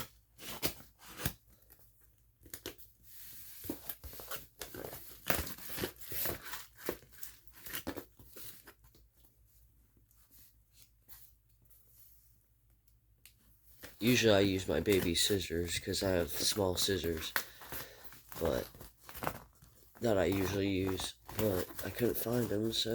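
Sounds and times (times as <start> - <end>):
knife tearing open a package: 0.0 - 1.7, 3.6 - 8.7.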